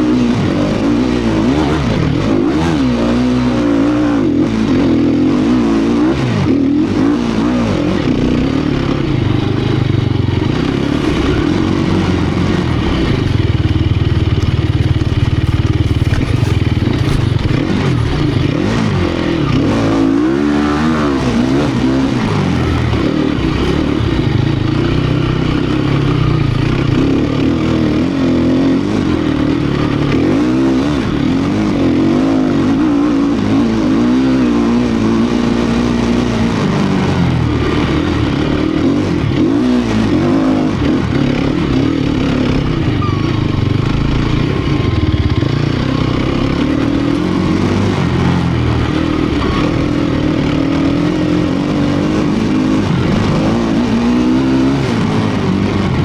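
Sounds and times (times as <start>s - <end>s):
motorbike engine revving: 0.0s - 56.0s
bike knocks and rattles: 12.7s - 18.8s.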